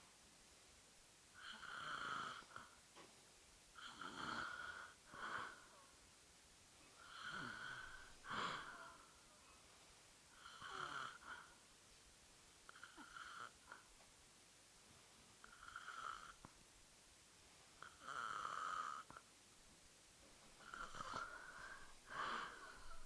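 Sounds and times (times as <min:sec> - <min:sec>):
woman snoring: 0:01.4 - 0:02.7, 0:03.8 - 0:05.7, 0:07.0 - 0:09.1, 0:10.4 - 0:11.5, 0:12.7 - 0:13.8, 0:15.4 - 0:16.4, 0:17.8 - 0:19.2, 0:20.6 - 0:23.0.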